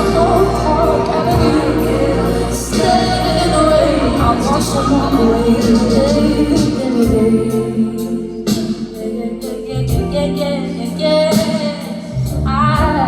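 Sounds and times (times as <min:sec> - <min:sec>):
live band playing ballad: 0:00.0 - 0:13.0
person singing: 0:00.0 - 0:13.0.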